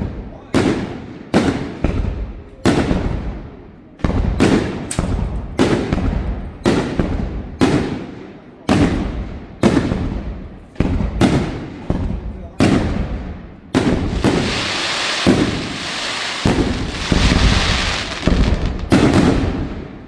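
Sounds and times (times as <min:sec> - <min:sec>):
fireworks bangs: 0:00.0 - 0:20.0
rumbling echo: 0:12.8 - 0:20.0.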